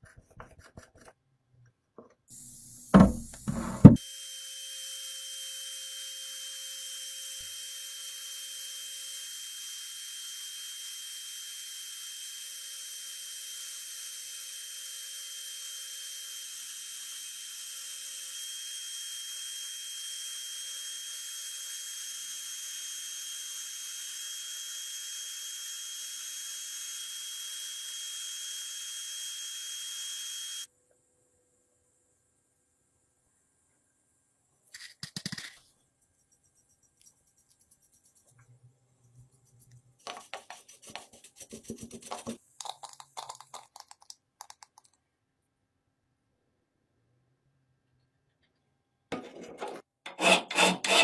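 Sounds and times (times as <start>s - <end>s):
high-speed power tool whining: 2.4s - 30.7s.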